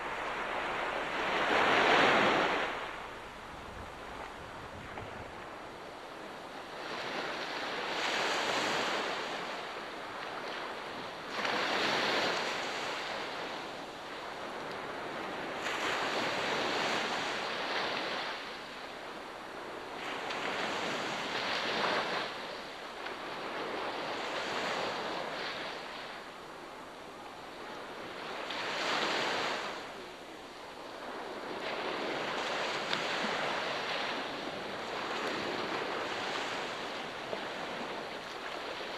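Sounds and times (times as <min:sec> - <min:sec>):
ocean waves breaking on shore: 0:00.0 - 0:38.9.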